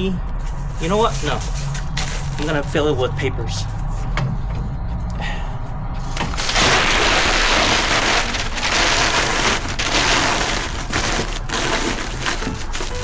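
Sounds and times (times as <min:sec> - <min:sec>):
paper crumpling: 0:00.6 - 0:02.8, 0:06.2 - 0:13.0.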